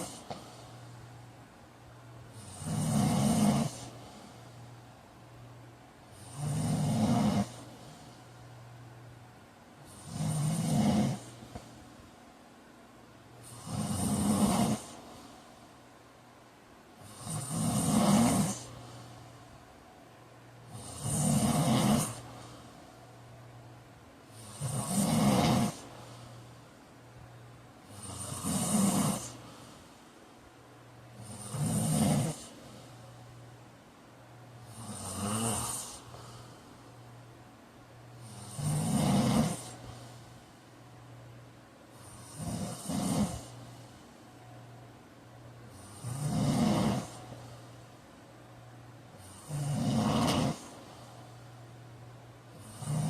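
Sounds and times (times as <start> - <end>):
man snoring: 0.0 - 0.7, 2.3 - 4.4, 6.1 - 8.2, 9.8 - 11.6, 13.4 - 15.2, 17.0 - 18.9, 20.7 - 22.6, 24.3 - 26.0, 27.8 - 29.6, 31.1 - 32.7, 34.6 - 36.5, 38.1 - 40.0, 42.0 - 43.7, 45.7 - 47.4, 49.2 - 51.0, 52.5 - 53.0
quiet breathing: 0.0 - 53.0.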